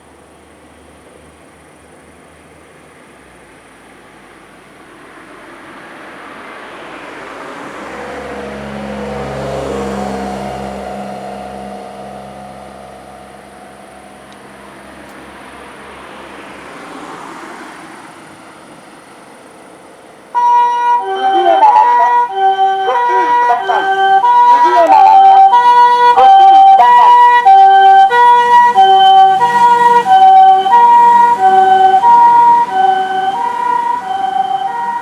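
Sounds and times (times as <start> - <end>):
vehicle passing by: 5.2 - 19.6, 20.3 - 35.0
ambulance siren: 6.1 - 17.1, 20.3 - 35.0.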